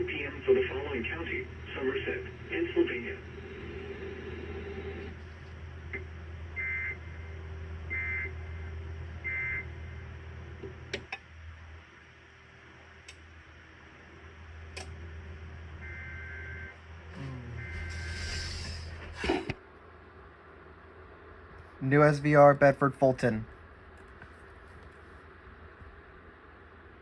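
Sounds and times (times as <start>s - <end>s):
two-tone data bursts: 17.6s - 18.9s.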